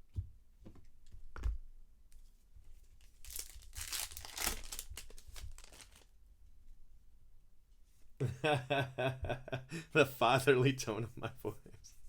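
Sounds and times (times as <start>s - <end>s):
foil wrapper tearing and crinkling: 3.0s - 6.1s.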